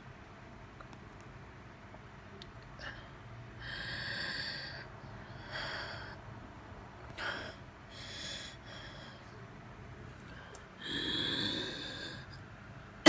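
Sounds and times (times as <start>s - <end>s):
person wheezing breaths: 10.3s - 12.4s.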